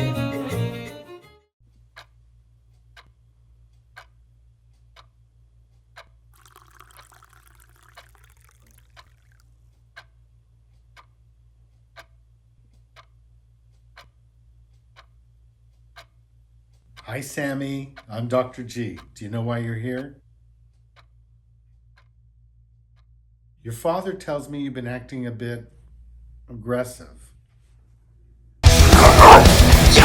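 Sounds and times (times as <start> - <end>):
clock ticking: 2.9 - 3.2, 3.9 - 4.2, 4.9 - 5.2, 5.9 - 10.2, 10.9 - 11.2, 11.9 - 12.2, 12.9 - 13.2, 13.8 - 15.2, 15.9 - 19.4, 20.8 - 21.2
liquid pouring: 6.4 - 9.5.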